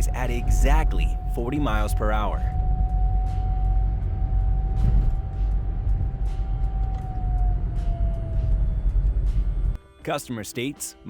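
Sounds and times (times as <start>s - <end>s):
car high whine: 0.0s - 9.8s
road and engine rumble: 0.0s - 9.8s.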